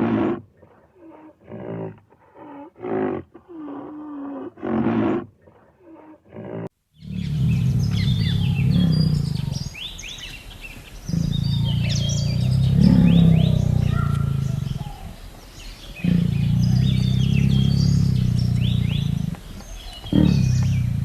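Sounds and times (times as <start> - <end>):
large animal growling: 6.0 - 21.0
birds chirping: 7.0 - 21.0.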